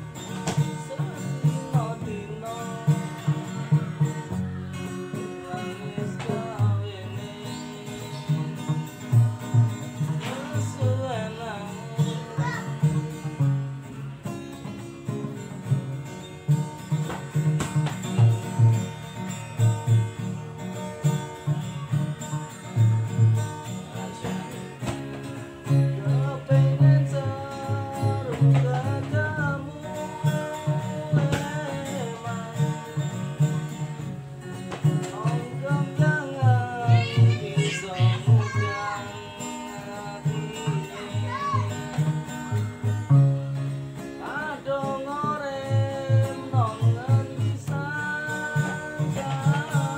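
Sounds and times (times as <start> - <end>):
person singing: 0.0 - 14.0, 21.0 - 43.2, 43.9 - 49.9
guitar plucked and strummed: 0.0 - 49.9.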